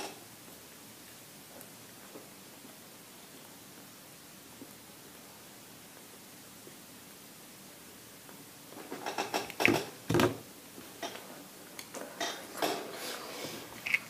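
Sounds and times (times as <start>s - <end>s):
crackly eating clicks: 11.0s - 12.8s, 13.7s - 14.0s.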